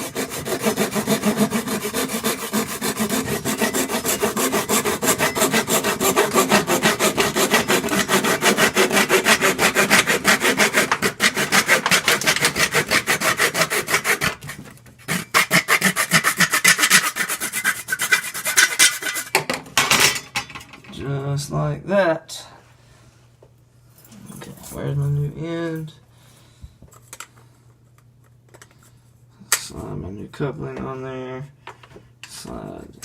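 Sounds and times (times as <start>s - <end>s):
hand saw cutting plastic pipe: 0.0s - 19.4s.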